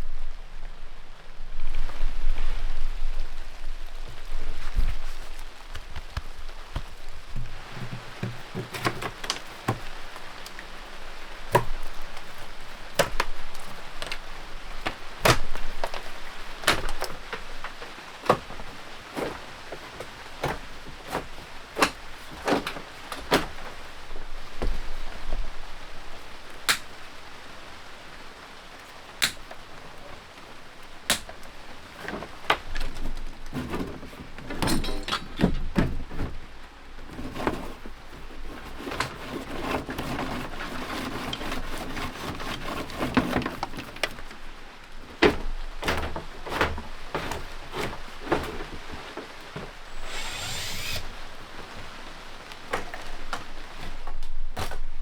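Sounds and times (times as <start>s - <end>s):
knocks and clatter of hand work: 6.0s - 10.1s, 32.0s - 36.5s.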